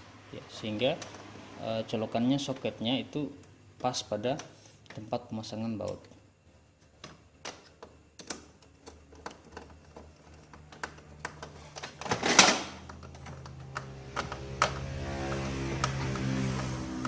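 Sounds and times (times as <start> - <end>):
plastic parts clicking and tapping: 6.9 - 17.0.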